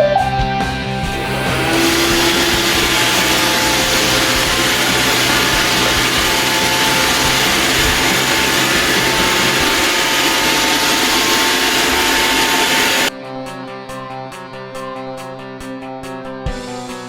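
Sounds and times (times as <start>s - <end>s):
guitar music: 0.0s - 17.0s
robot vacuum motor rushing: 0.8s - 13.1s.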